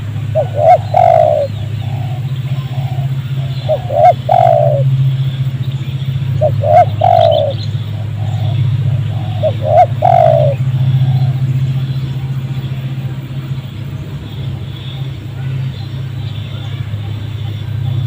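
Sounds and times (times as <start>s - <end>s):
dove cooing: 0.0s - 5.0s, 6.3s - 12.3s
steady low hum: 0.0s - 18.0s.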